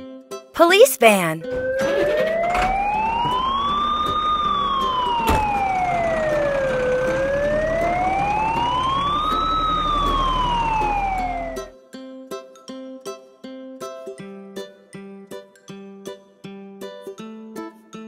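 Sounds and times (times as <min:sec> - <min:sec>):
police siren wailing: 0:01.4 - 0:11.7.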